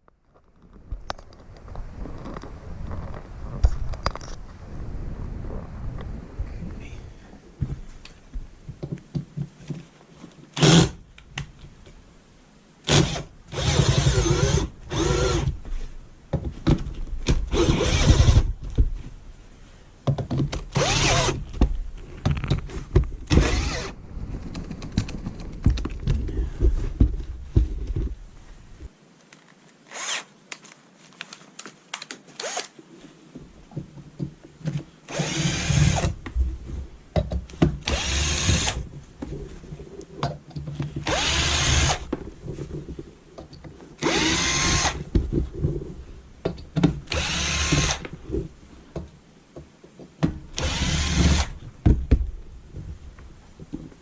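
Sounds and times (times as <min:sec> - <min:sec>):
clicks and handling noise: 0:00.0 - 0:04.6, 0:20.2 - 0:28.2, 0:28.8 - 0:34.9
power drill bursts: 0:20.8 - 0:21.4, 0:23.3 - 0:23.9, 0:35.1 - 0:36.1, 0:37.8 - 0:38.8, 0:41.1 - 0:42.0, 0:44.0 - 0:45.0, 0:47.1 - 0:48.0, 0:50.6 - 0:51.6.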